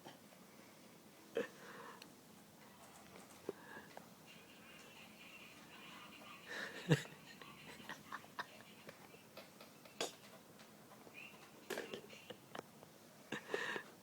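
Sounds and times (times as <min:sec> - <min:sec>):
soft breathing: 0:00.4 - 0:07.0, 0:13.3 - 0:14.0.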